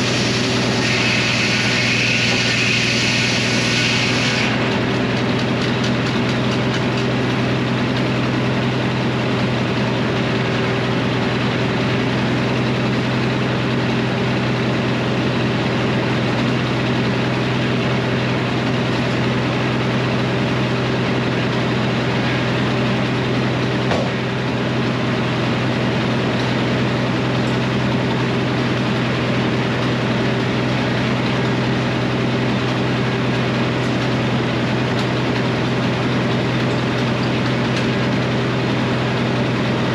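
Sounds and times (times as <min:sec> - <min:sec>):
sawmill engine droning: 0:00.0 - 0:39.9.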